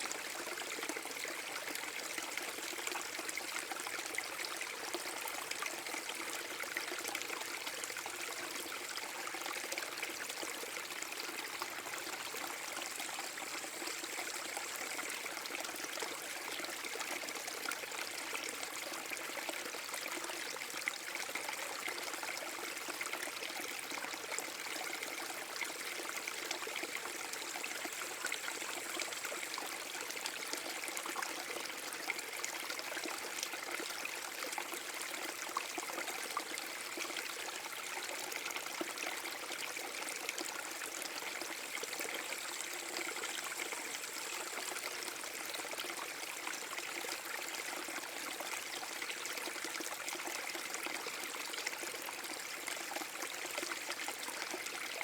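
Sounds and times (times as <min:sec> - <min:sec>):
small waterfall splashing: 0:00.0 - 0:55.0
water trickling and dripping: 0:00.0 - 0:55.0.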